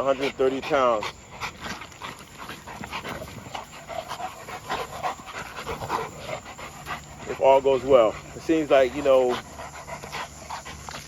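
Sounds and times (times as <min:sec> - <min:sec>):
dogs panting hard: 0:00.0 - 0:11.0.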